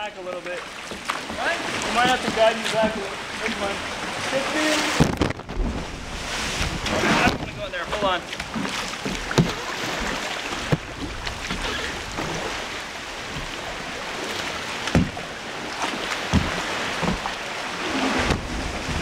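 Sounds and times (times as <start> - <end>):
water sloshing around kayak: 0.0 - 19.0
sharp knocks: 4.9 - 5.8, 14.9 - 15.2, 16.3 - 17.3.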